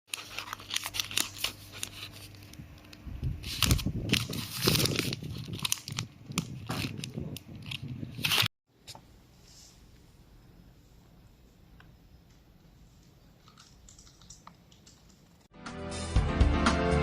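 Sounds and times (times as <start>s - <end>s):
handling clicks and crinkly rustles: 0.1s - 8.5s, 13.0s - 15.5s.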